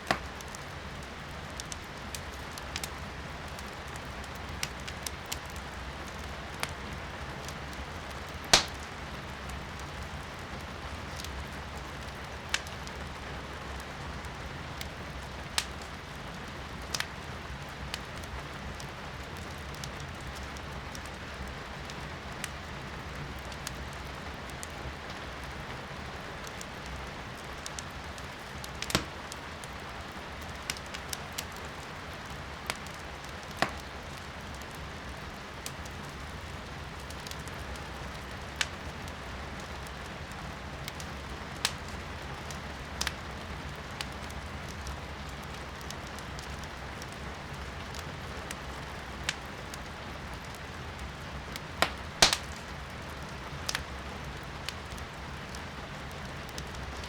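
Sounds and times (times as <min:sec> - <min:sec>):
firewood crackling and popping: 0:00.0 - 0:57.0
steady rain heard indoors: 0:00.0 - 0:57.0.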